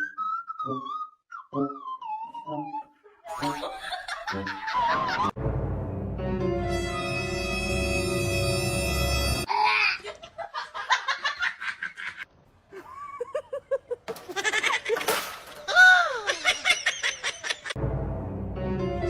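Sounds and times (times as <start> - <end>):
music: 0.0 - 9.5, 17.8 - 19.0.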